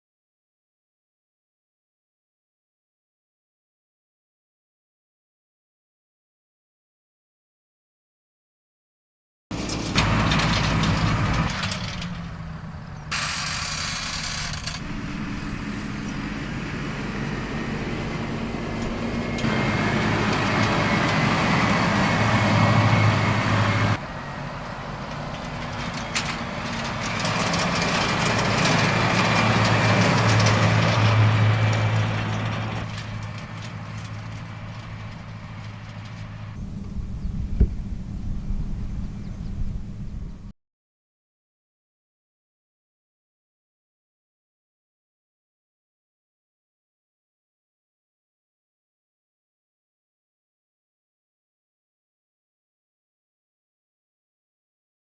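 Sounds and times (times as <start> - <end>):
tractor engine running under load: 9.6 - 40.5.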